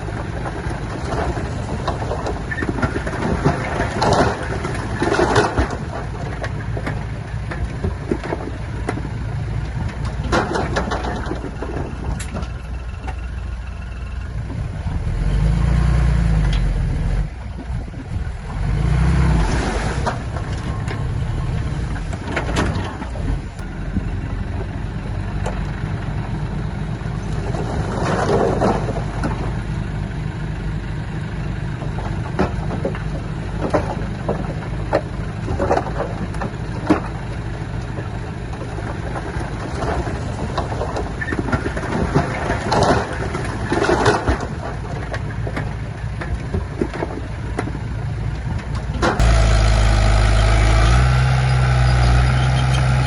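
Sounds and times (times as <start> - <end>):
clanks and knocks: 0.0 - 13.3, 20.1 - 24.7, 31.8 - 37.2
bulldozer diesel engine: 0.0 - 53.0.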